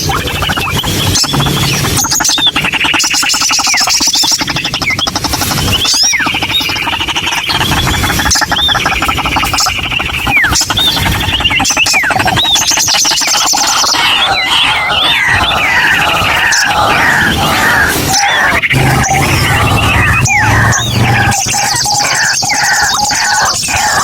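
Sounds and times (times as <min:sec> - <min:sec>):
bird squawking calls: 0:00.0 - 0:24.0
fast rattling chatter: 0:00.0 - 0:24.0.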